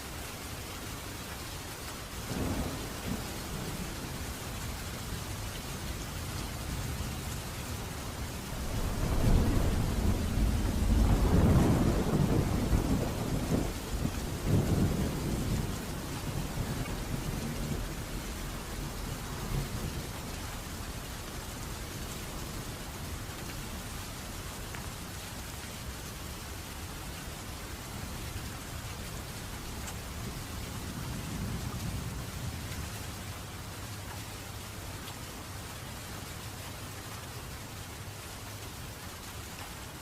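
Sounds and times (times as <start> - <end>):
steady rain falling: 0.0 - 40.0
thunder rumbling: 8.2 - 20.1.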